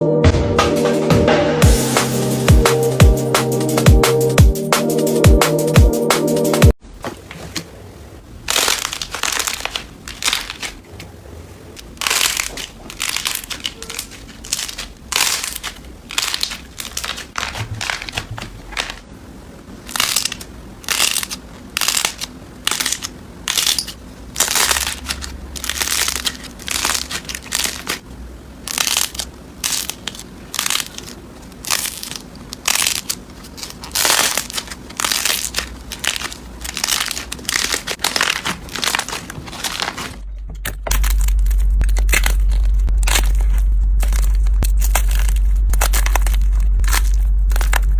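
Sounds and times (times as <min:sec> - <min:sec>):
slime crackling when squeezed: 0:08.4 - 0:10.8, 0:11.8 - 0:19.0, 0:19.8 - 0:28.0, 0:28.6 - 0:40.2, 0:40.9 - 0:47.9.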